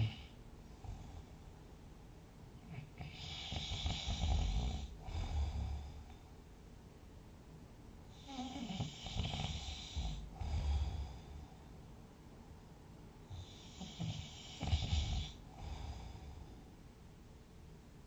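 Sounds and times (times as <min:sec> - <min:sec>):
person snoring: 0:00.0 - 0:00.3, 0:02.7 - 0:06.1, 0:08.2 - 0:11.4, 0:13.3 - 0:16.4.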